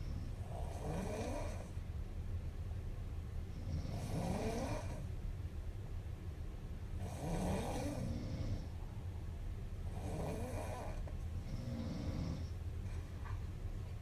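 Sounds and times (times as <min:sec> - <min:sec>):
woman snoring: 0:00.0 - 0:01.8, 0:03.6 - 0:05.1, 0:07.0 - 0:08.7, 0:09.9 - 0:12.5.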